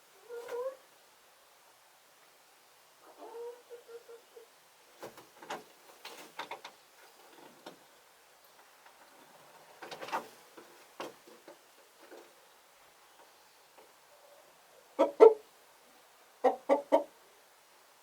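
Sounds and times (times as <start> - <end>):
chickens scuffing and clicking: 5.0 - 12.5.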